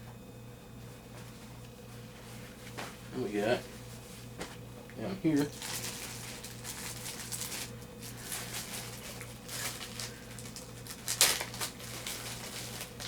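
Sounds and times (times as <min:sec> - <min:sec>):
steady low hum: 0:00.0 - 0:13.0
items rustling and scratching: 0:05.3 - 0:13.0.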